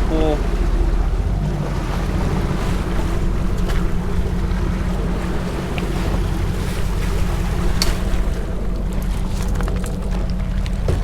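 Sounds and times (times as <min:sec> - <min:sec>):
boat engine running: 0:00.0 - 0:11.0
sea washing around hull: 0:00.0 - 0:11.0.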